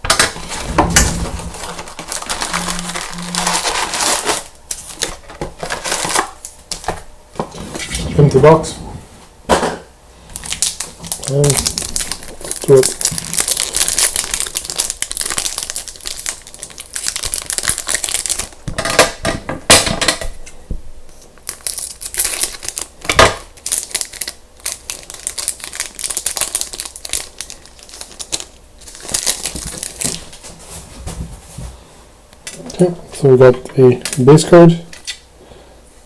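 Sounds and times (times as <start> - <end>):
wrapper crinkling and crackling: 0.2 - 7.0, 10.3 - 19.2, 21.4 - 30.6.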